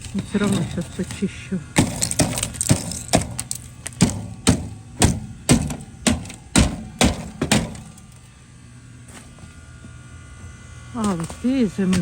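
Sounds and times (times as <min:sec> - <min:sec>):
sharp knocks on ice: 0:01.8 - 0:08.0.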